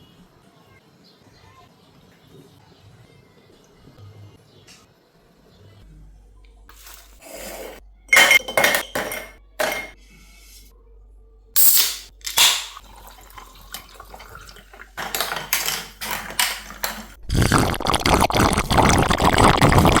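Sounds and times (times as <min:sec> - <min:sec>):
carbonated water pouring and fizzing: 0:12.2 - 0:20.0.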